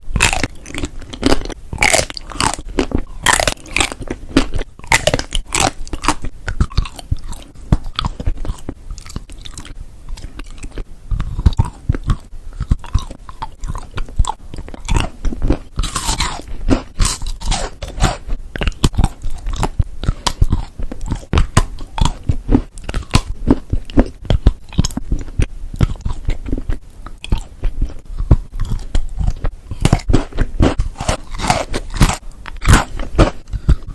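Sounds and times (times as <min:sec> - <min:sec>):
crunching chocolate bar: 0:00.2 - 0:28.0, 0:28.6 - 0:33.9.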